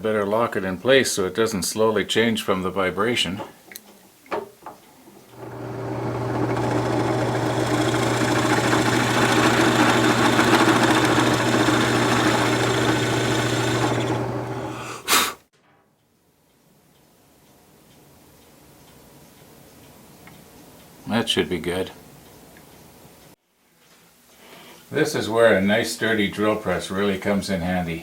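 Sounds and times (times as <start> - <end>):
drill press motor humming: 5.3 - 15.1.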